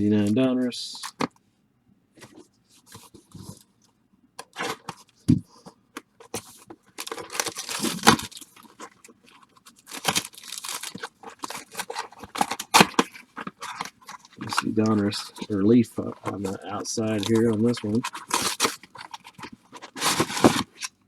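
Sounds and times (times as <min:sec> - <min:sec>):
card pack wrappers tearing: 0:04.4 - 0:05.0, 0:06.3 - 0:21.0.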